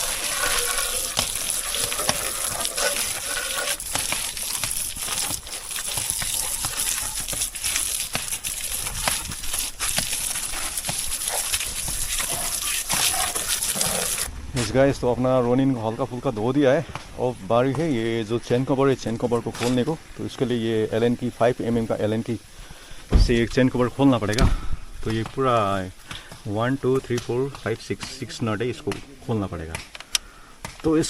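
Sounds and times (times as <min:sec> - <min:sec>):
water spraying on a motorcycle: 0:00.0 - 0:14.3.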